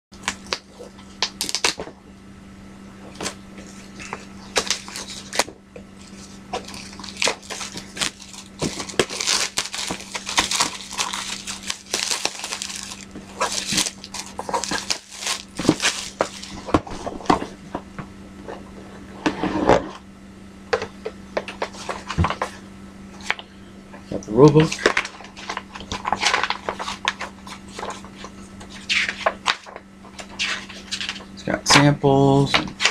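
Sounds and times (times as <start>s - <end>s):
low electrical hum: 0.1s - 32.9s
box packaging crinkling and rustling: 0.2s - 1.9s, 3.1s - 17.6s, 24.5s - 31.3s.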